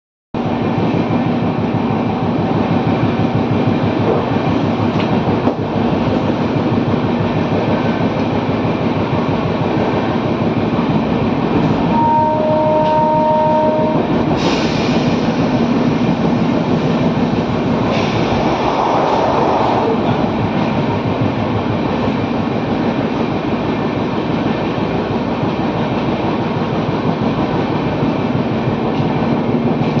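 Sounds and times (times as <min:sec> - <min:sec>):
train rumbling and clattering: 0:00.4 - 0:30.0
two-tone train horn: 0:11.9 - 0:14.1.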